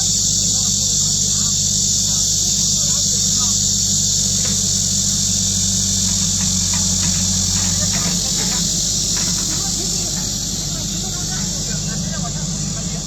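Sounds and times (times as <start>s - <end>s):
excavator diesel engine running: 0.0s - 13.0s
high hiss: 0.0s - 13.0s
faint ticks and scrapes: 2.9s - 12.9s.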